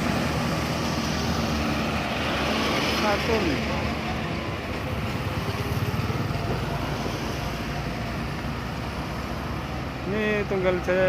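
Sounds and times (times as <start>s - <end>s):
bus diesel engine rumbling: 0.0s - 11.0s
tyre and road noise: 0.0s - 11.0s.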